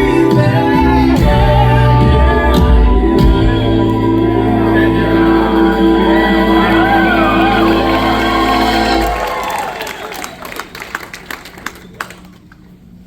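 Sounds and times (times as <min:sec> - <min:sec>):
person singing drawn-out vocal: 0:00.0 - 0:09.2
live band holding a chord: 0:00.0 - 0:11.6.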